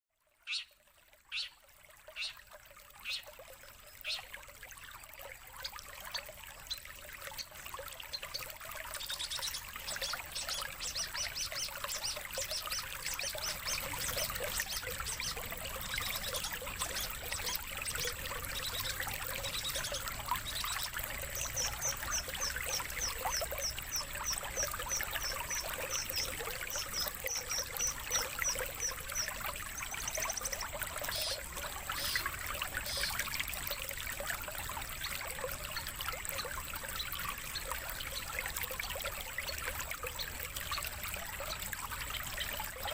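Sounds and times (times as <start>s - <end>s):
running water: 0.2s - 42.9s
songbird calls: 0.4s - 0.7s, 1.3s - 1.6s, 2.2s - 2.4s, 3.0s - 3.3s, 4.0s - 4.3s, 8.1s - 33.2s.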